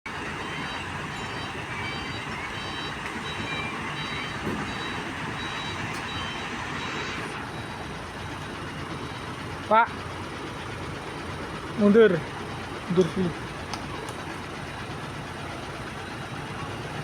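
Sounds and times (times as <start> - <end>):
diesel engine running: 0.0 - 17.0
reversing alarm beeping: 0.1 - 9.6.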